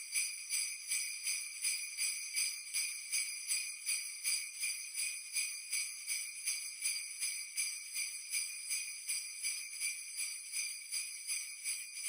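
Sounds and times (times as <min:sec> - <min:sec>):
sleigh bells jingling: 0:00.0 - 0:12.0.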